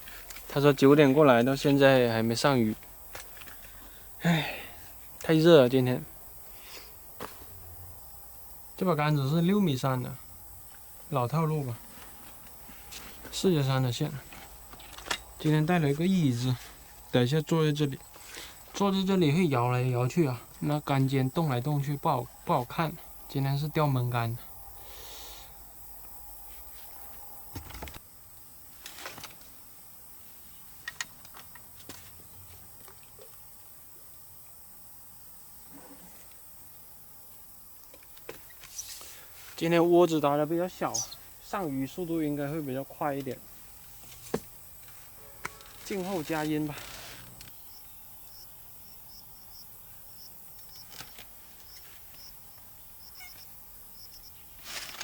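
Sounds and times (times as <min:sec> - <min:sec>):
faint steady hiss: 0:00.0 - 0:55.0
insects chirping: 0:00.0 - 0:55.0
handling rustles and clicks: 0:14.2 - 0:15.5.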